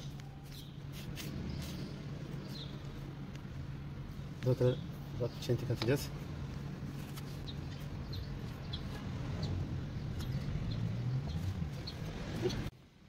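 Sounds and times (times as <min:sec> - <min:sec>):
high bird chirps: 0:07.4 - 0:12.7.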